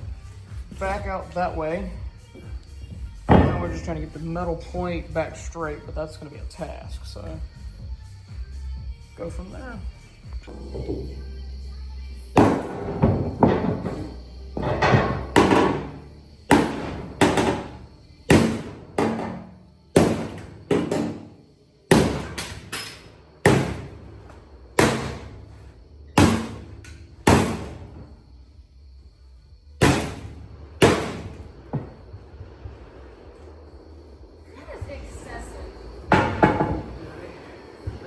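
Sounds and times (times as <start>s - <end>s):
hammer striking steel plate: 3.3s - 4.2s, 26.2s - 27.8s, 29.8s - 31.4s.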